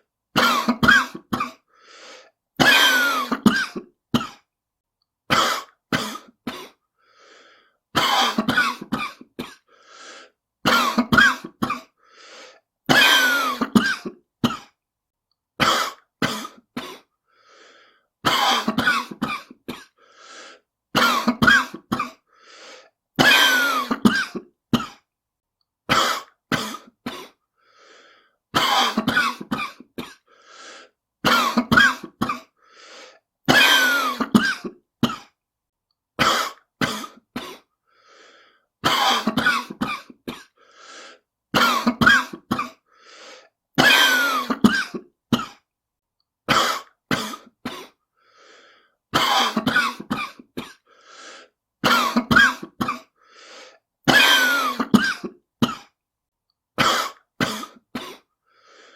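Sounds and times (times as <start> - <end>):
person coughing harshly: 0.4 - 1.7, 2.6 - 4.5, 5.3 - 6.8, 8.0 - 9.7, 10.6 - 12.0, 12.8 - 14.8, 15.6 - 17.1, 18.2 - 20.0, 20.9 - 22.3, 23.2 - 25.1, 25.9 - 27.4, 28.5 - 30.4, 31.2 - 32.6, 33.5 - 35.4, 36.2 - 37.7, 38.8 - 40.6, 41.5 - 42.9, 43.8 - 45.7, 46.5 - 48.0, 49.2 - 50.9, 51.8 - 53.2, 54.1 - 56.0, 56.8 - 58.3
person breathing: 1.7 - 2.4, 6.9 - 7.9, 9.6 - 10.4, 12.0 - 12.7, 17.2 - 18.2, 19.9 - 20.7, 22.3 - 23.0, 27.3 - 28.5, 30.2 - 31.0, 32.6 - 33.3, 37.8 - 38.8, 40.5 - 41.3, 42.8 - 43.6, 48.1 - 49.0, 50.8 - 51.6, 53.2 - 53.8, 58.4 - 58.9.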